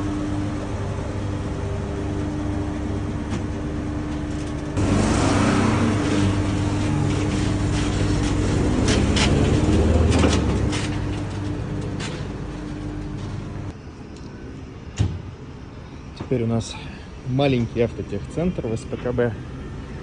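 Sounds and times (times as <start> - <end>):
buggy engine running: 4.2 - 13.7.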